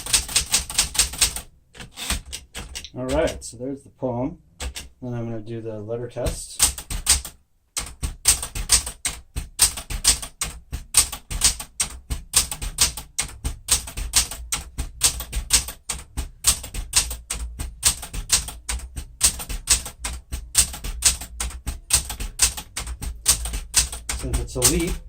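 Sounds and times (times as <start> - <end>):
manual typewriter key strikes: 0.0 - 3.4, 4.6 - 4.9, 6.6 - 25.0.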